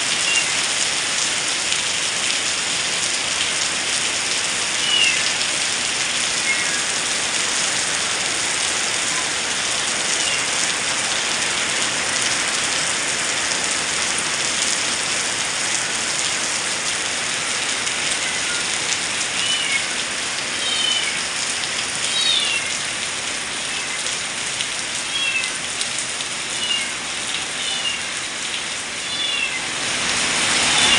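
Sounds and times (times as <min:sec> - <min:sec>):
heavy rain: 0:00.0 - 0:30.9
cat mewing: 0:18.0 - 0:18.8, 0:29.0 - 0:29.8.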